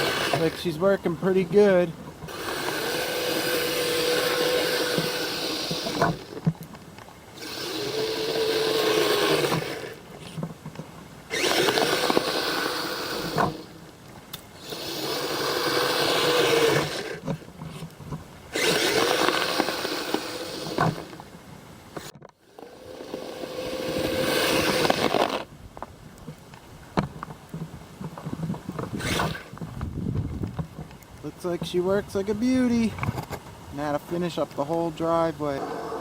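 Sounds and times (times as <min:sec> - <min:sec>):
electric motors whining: 0:00.0 - 0:21.3, 0:21.9 - 0:25.5, 0:28.4 - 0:29.8, 0:35.5 - 0:36.0.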